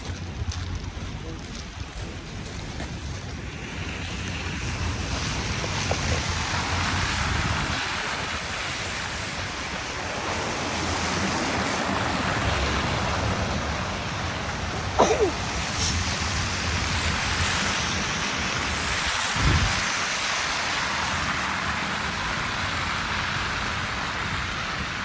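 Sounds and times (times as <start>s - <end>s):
wind gusting against microphone: 0.0s - 25.0s.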